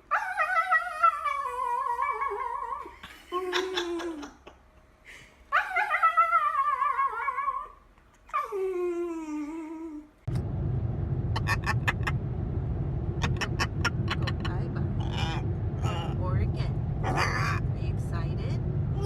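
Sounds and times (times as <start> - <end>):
steady low rumble: 10.3 - 19.0.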